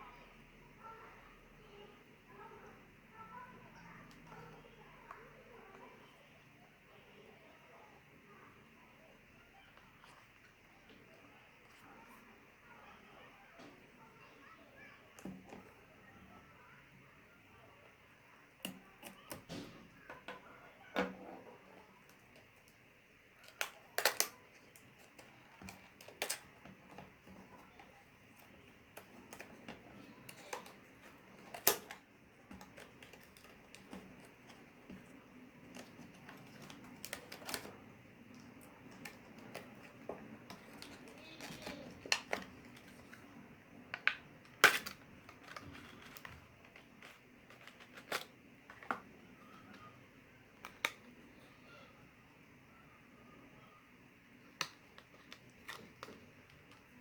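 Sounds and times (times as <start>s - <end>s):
plastic packaging clicks: 23.4s - 27.0s, 29.0s - 35.0s, 43.9s - 49.0s
packaging rustling: 23.4s - 49.1s.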